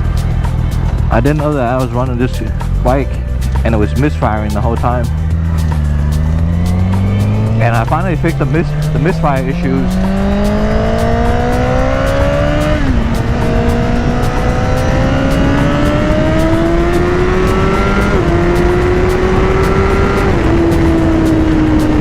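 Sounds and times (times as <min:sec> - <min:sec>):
motorcycle engine accelerating: 0:02.5 - 0:22.0
wind rush: 0:05.3 - 0:22.0.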